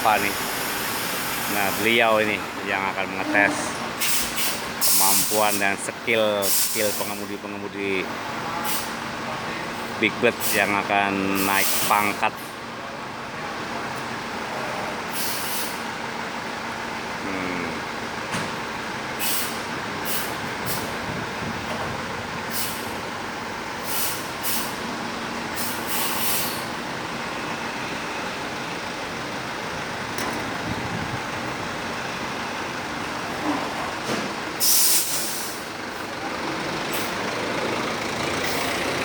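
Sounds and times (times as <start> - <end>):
air brakes hissing: 0.0 - 5.8, 6.4 - 7.4, 8.6 - 9.0, 9.8 - 12.6, 15.0 - 15.9, 19.2 - 21.0, 22.5 - 23.0, 23.8 - 26.8, 33.3 - 36.2, 38.3 - 39.0
bus engine running: 0.0 - 39.0.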